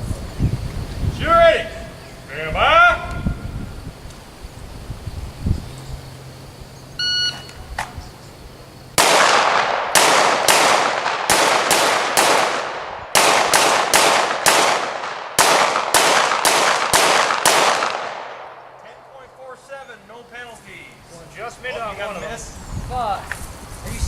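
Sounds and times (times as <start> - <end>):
shot timer beep: 7.0 - 7.6
pistol shots: 9.0 - 18.8.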